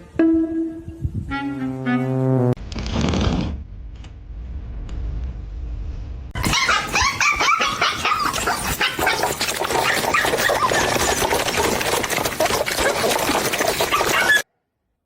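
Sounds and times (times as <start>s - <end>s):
noisy clatter: 2.6s - 14.4s
dog vocalizing: 6.4s - 14.4s.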